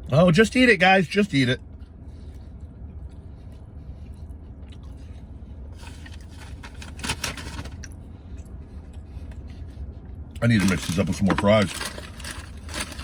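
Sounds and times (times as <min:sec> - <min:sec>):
low steady hum: 0:00.0 - 0:13.0
man chewing and eating: 0:01.6 - 0:13.0
crunching and scraping: 0:05.8 - 0:07.9, 0:10.4 - 0:13.0.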